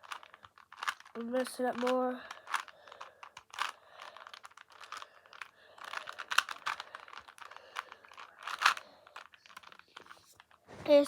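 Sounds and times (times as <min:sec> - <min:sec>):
plastic puzzle cube clicking: 0:00.0 - 0:10.6.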